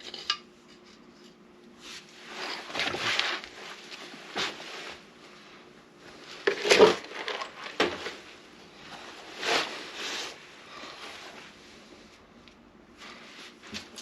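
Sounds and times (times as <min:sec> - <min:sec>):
handling rustling and scraping: 0:00.0 - 0:14.0.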